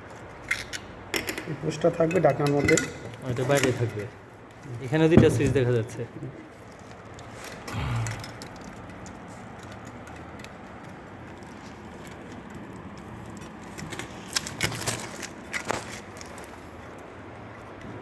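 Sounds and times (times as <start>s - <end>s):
dull thump: 5.2s - 5.8s.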